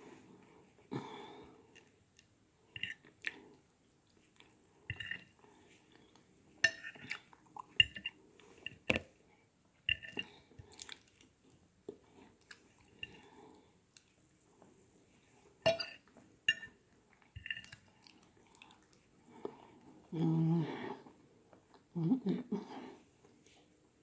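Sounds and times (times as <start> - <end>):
wet chewing and smacking: 10.2 - 13.3, 17.1 - 19.6.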